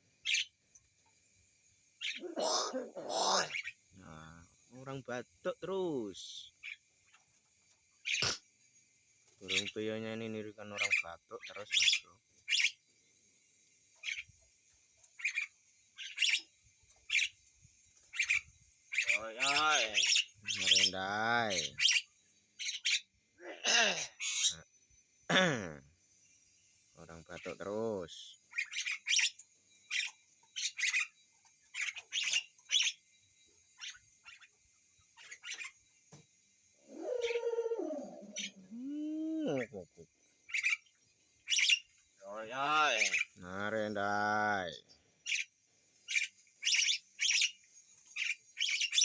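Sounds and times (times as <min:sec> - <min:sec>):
myna bird mimicking coughing: 0:02.0 - 0:03.7, 0:08.1 - 0:08.5, 0:23.4 - 0:24.5, 0:25.3 - 0:25.8
myna bird raspy cough-like calls: 0:02.0 - 0:03.8, 0:08.0 - 0:08.6, 0:22.8 - 0:24.6, 0:25.3 - 0:26.0, 0:36.8 - 0:39.9
myna bird voice-like call: 0:02.0 - 0:04.3, 0:18.2 - 0:22.0, 0:36.8 - 0:40.8, 0:41.5 - 0:45.4.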